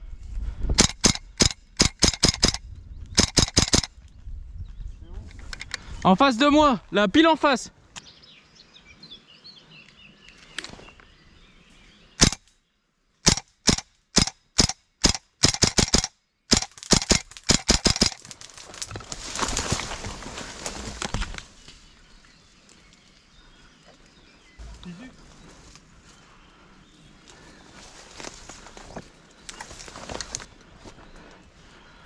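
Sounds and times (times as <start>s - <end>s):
airsoft gun shots: 3.2s - 3.9s, 12.2s - 12.4s, 13.2s - 18.2s.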